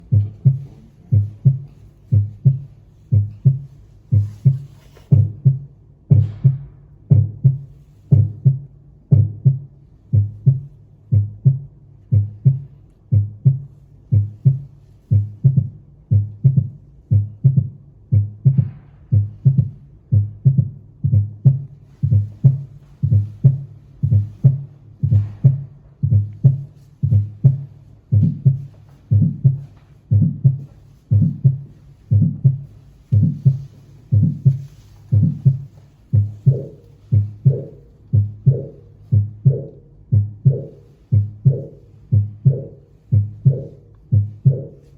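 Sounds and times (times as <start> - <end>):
faint rubbing hiss: 0.0 - 5.6, 21.5 - 39.6
heartbeat through stethoscope: 0.0 - 44.9.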